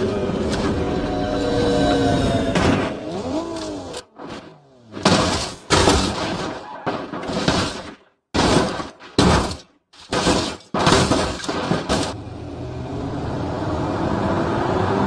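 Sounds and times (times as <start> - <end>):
loud crashing bursts: 0.4 - 12.2.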